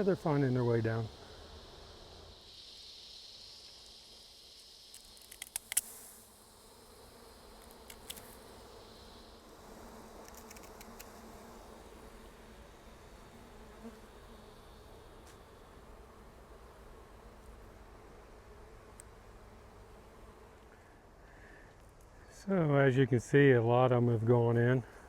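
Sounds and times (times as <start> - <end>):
bee swarm buzzing: 0.0 - 21.5
sharp clicks: 4.9 - 5.9, 7.6 - 8.3, 10.2 - 11.1.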